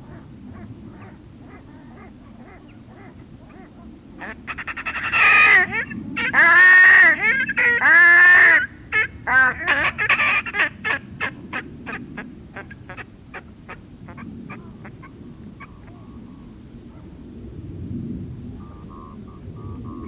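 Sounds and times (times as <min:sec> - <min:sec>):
swans honking: 0:04.2 - 0:11.0.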